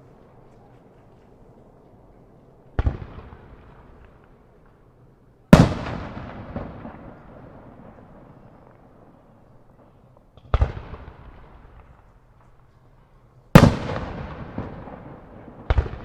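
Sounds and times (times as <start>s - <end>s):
echo of booms: 2.7s - 4.2s, 5.5s - 9.2s, 13.6s - 16.0s.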